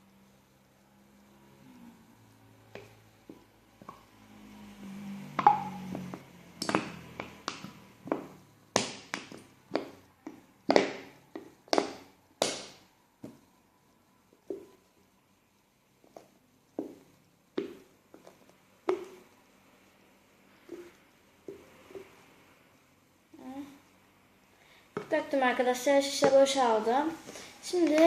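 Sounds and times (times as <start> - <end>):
plastic bottle tapping and knocking: 5.4 - 13.4, 17.6 - 19.2.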